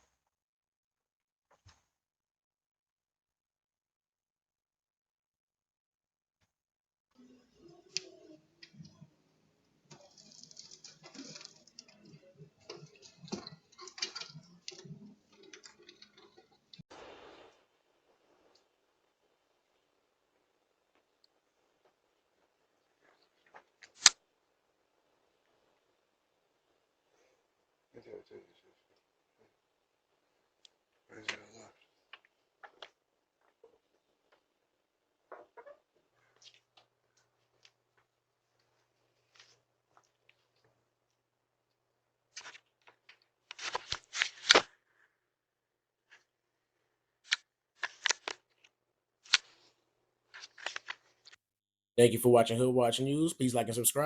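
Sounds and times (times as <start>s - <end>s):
rustling and clicking: 9.9s - 16.8s, 42.3s - 44.8s, 47.2s - 51.4s.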